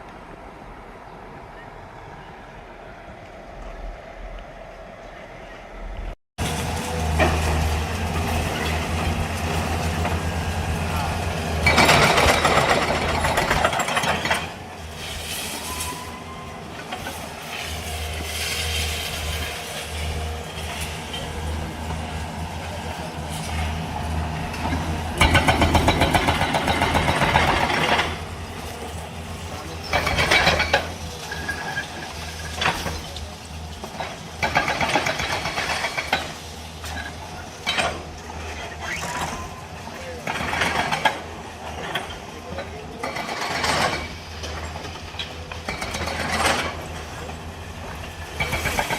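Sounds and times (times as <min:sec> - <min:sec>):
heavy diesel engine running: 0:03.7 - 0:48.9
people talking: 0:10.7 - 0:12.5, 0:20.7 - 0:26.4, 0:27.0 - 0:34.1, 0:38.6 - 0:41.1, 0:41.8 - 0:43.4.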